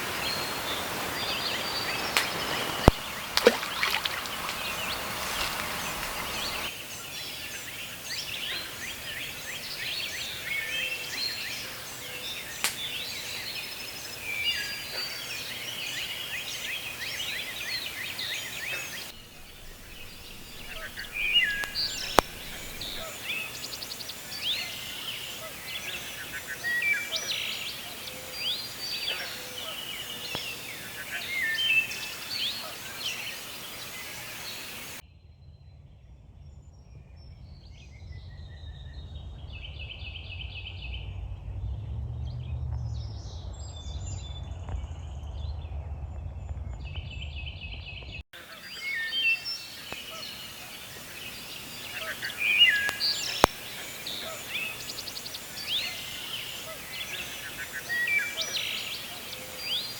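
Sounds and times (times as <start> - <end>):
birds chirping and singing: 0.0 - 35.0, 48.5 - 59.9
steady outdoor hiss: 0.0 - 35.0, 48.4 - 59.9.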